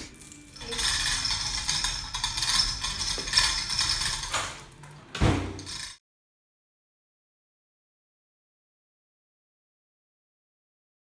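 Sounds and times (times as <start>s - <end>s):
metal parts rattling and clinking: 0.0s - 6.0s.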